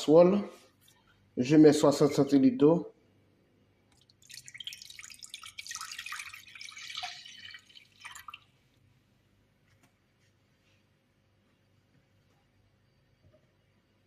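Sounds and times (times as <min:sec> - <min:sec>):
water pouring into a saucepan: 0:04.0 - 0:08.6.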